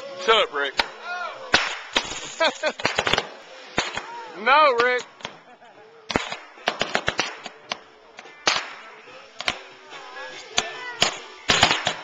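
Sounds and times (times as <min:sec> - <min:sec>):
fireworks cracking and popping: 0:00.6 - 0:12.0
fireworks bangs: 0:00.8 - 0:05.4, 0:06.1 - 0:07.8, 0:08.4 - 0:09.7, 0:10.6 - 0:12.0.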